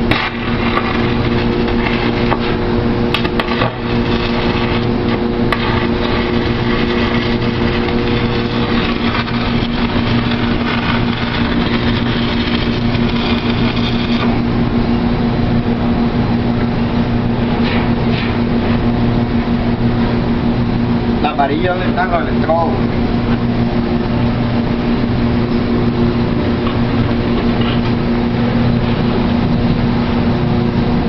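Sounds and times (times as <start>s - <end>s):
welding arc crackling: 0.0s - 14.8s
welding machine electrical hum: 0.0s - 31.0s.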